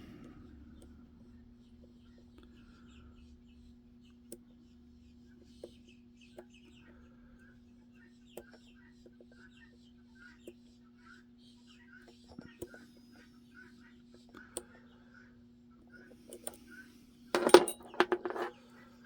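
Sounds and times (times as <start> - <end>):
lock pick clicks: 17.4 - 18.5.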